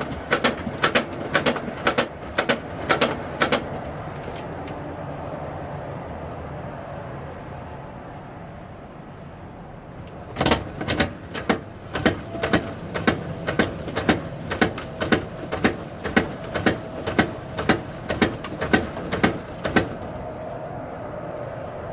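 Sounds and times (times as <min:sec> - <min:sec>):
washer knocking: 0:00.0 - 0:03.9, 0:10.1 - 0:20.2
washer hum: 0:00.0 - 0:04.6, 0:10.0 - 0:21.3.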